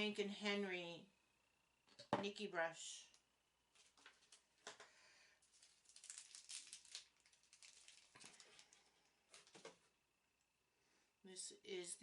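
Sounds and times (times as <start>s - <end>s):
packaging rustling and clicking: 3.8s - 9.8s.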